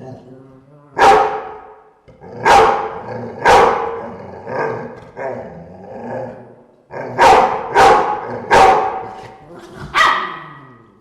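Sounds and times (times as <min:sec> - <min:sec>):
dogs growling and snarling: 0:00.0 - 0:00.4, 0:02.1 - 0:07.2, 0:08.1 - 0:11.0
dogs barking: 0:01.0 - 0:01.8, 0:02.4 - 0:05.0, 0:07.0 - 0:09.3, 0:09.9 - 0:10.6.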